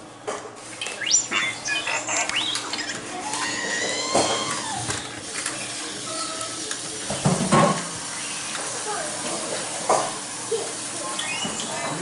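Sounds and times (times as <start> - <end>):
rising electronic chirps: 0.7 - 4.5.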